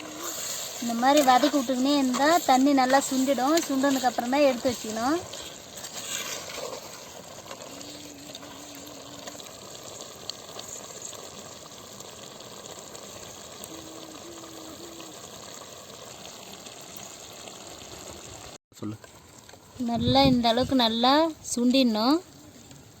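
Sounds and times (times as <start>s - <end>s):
chicken bubbling and sizzling in pan: 0.0s - 23.0s.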